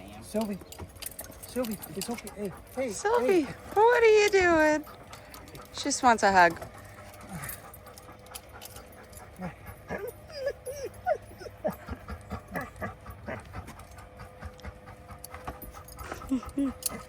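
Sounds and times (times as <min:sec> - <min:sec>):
dog whimpering and whining: 0:08.6 - 0:14.6, 0:15.2 - 0:17.0.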